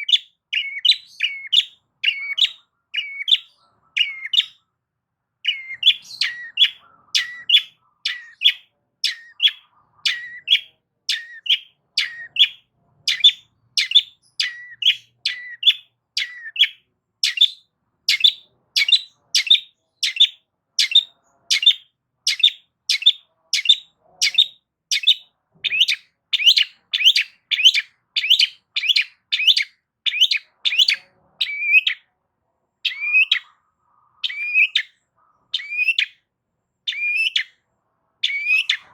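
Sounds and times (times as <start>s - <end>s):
bird giving harsh calls: 5.5s - 32.0s, 38.2s - 38.9s.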